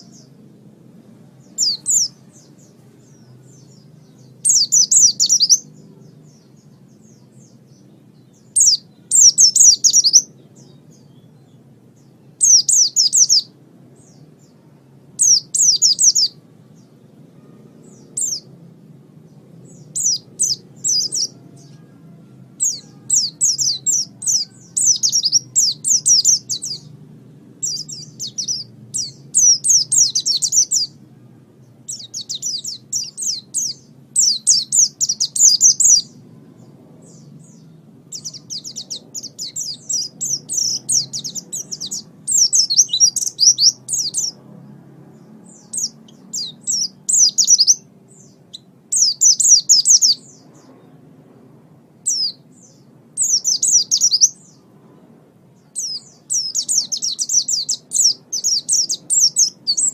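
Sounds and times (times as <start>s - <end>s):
songbird chattering: 55.8s - 59.9s.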